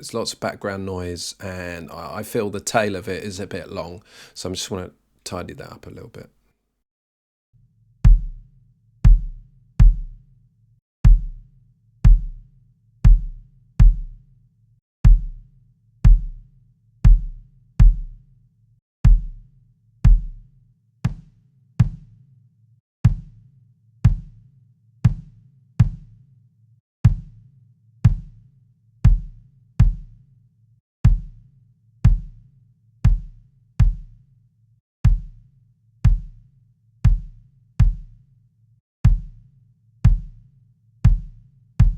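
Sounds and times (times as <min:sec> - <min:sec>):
kick drum beat: 0:08.1 - 0:08.4, 0:09.0 - 0:10.2, 0:11.0 - 0:11.4, 0:12.0 - 0:12.4, 0:13.0 - 0:14.2, 0:15.0 - 0:15.4, 0:16.0 - 0:16.4, 0:17.0 - 0:18.2, 0:19.0 - 0:20.5, 0:21.1 - 0:22.2, 0:23.1 - 0:23.4, 0:24.1 - 0:24.4, 0:25.1 - 0:26.2, 0:27.1 - 0:27.4, 0:28.1 - 0:28.4, 0:29.1 - 0:30.2, 0:31.1 - 0:31.4, 0:32.1 - 0:32.4, 0:33.1 - 0:34.2, 0:35.1 - 0:35.4, 0:36.1 - 0:36.4, 0:37.1 - 0:38.2, 0:39.1 - 0:39.4, 0:40.1 - 0:40.4, 0:41.1 - 0:41.9.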